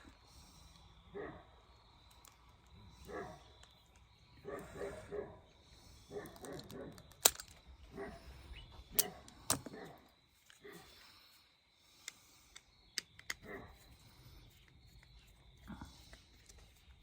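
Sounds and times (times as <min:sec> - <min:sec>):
hand tools clicking and snapping: 0:06.2 - 0:07.6, 0:12.0 - 0:13.6.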